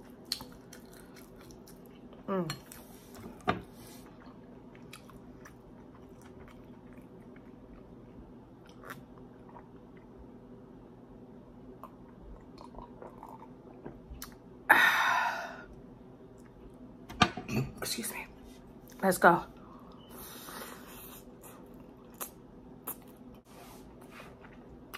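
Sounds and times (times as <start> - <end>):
person chewing crispy food: 0.0 - 2.8.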